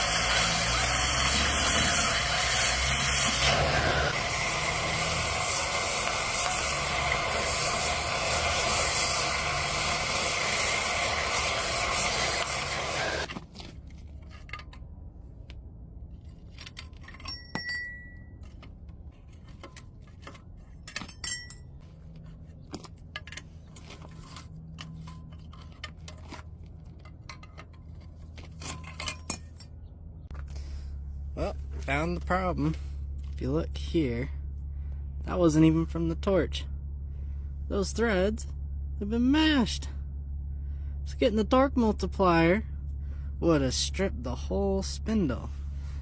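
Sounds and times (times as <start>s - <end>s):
metal tools clinking: 16.2s - 29.9s.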